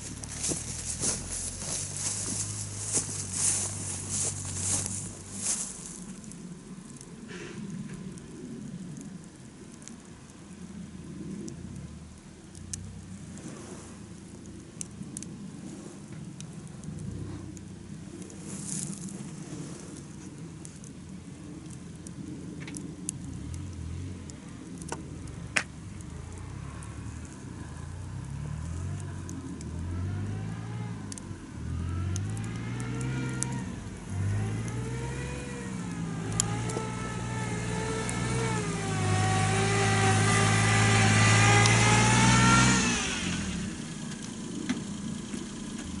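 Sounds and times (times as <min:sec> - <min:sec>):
car engine accelerating: 0:00.0 - 0:07.0, 0:23.2 - 0:46.0
wood fire popping: 0:00.0 - 0:46.0.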